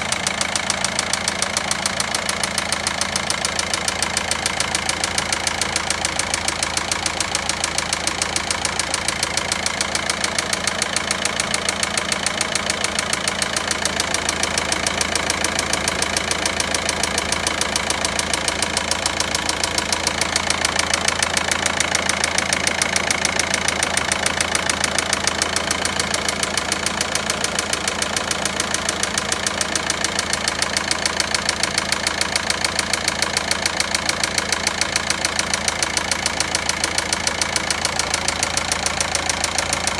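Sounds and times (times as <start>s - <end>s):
car engine idling: 0.0s - 39.9s
fast knocking tick: 2.4s - 39.9s.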